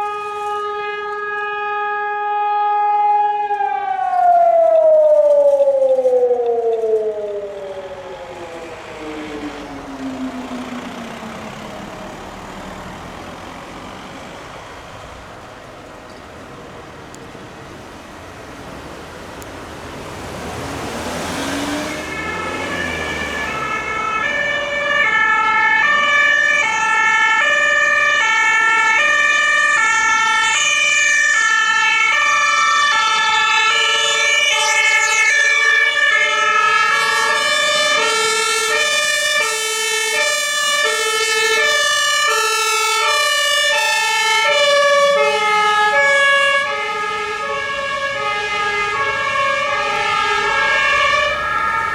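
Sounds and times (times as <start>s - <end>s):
two-tone emergency sirens: 0.0s - 51.9s
vehicle passing: 7.2s - 27.8s, 40.6s - 51.9s.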